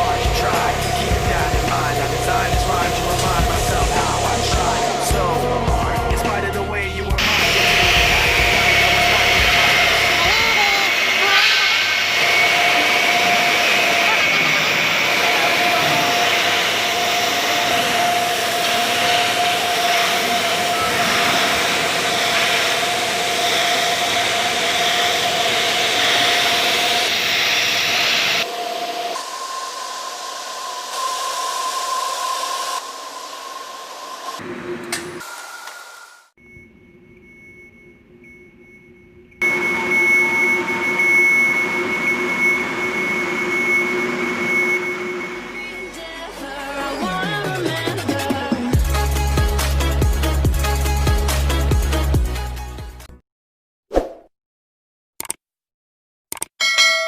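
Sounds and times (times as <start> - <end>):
welding arc hissing: 0.0 - 5.4, 7.2 - 28.5
high whine: 0.0 - 35.4, 36.4 - 52.0.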